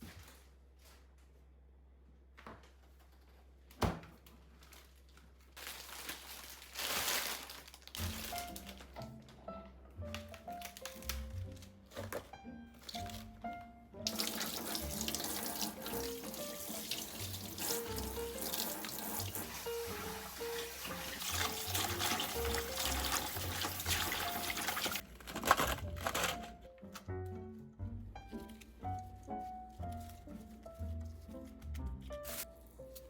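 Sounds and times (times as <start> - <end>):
soft background music: 6.3 - 33.0
tap water running into sink: 14.0 - 25.0.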